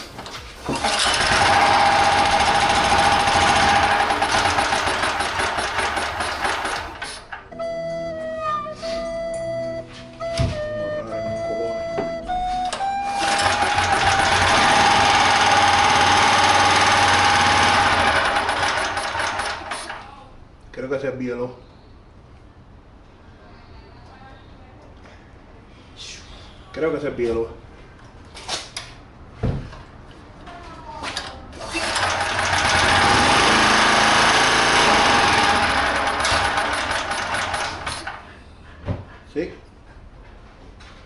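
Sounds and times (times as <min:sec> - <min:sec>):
generator engine knocking: 0:00.7 - 0:07.2, 0:13.2 - 0:19.8, 0:31.8 - 0:38.2.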